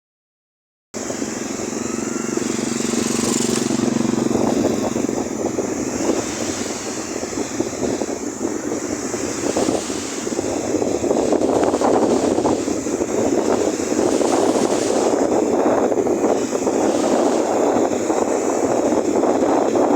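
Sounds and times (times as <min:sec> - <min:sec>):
waves rushing on beach: 0:01.0 - 0:19.9
wind buffeting microphone: 0:01.0 - 0:19.9.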